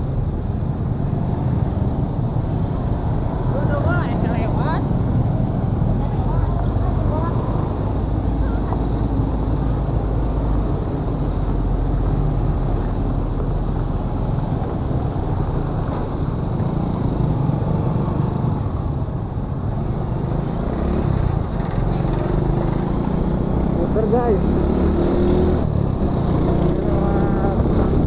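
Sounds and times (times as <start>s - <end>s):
wind on microphone: 25.2s - 28.0s
motorcycle engine running: 25.6s - 28.0s.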